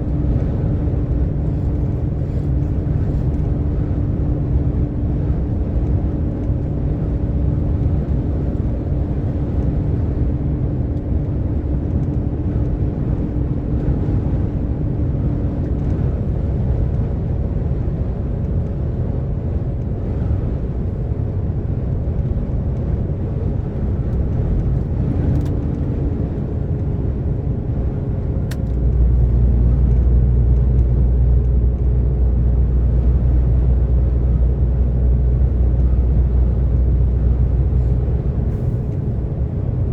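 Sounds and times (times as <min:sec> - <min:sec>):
road noise: 0:00.0 - 0:39.9
truck diesel engine: 0:00.0 - 0:39.9.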